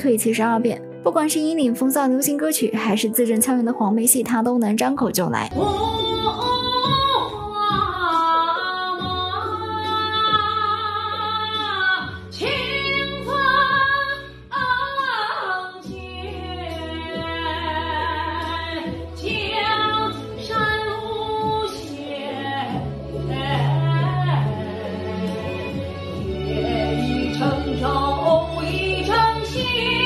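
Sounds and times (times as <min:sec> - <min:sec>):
woman singing unaccompanied: 0:05.4 - 0:25.7, 0:26.3 - 0:30.0.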